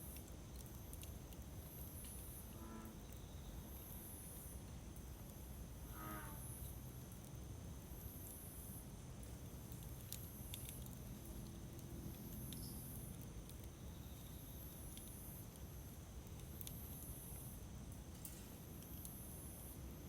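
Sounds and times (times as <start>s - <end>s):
campfire crackling and popping: 0.1s - 2.4s, 7.0s - 19.3s.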